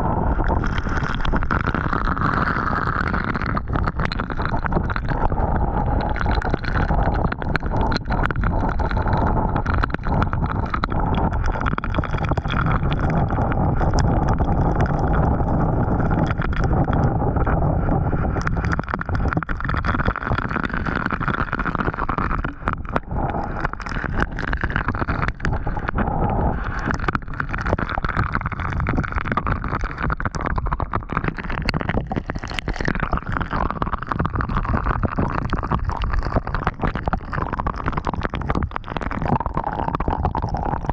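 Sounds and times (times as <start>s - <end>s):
wind buffeting microphone: 0.0s - 31.3s.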